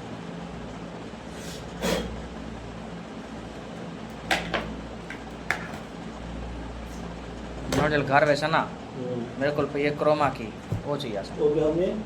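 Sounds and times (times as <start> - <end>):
room hum: 0.0 - 12.0.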